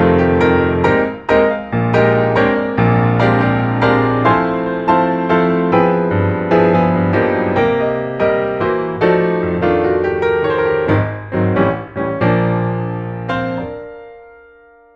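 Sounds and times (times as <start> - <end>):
piano music: 0.0 - 14.9.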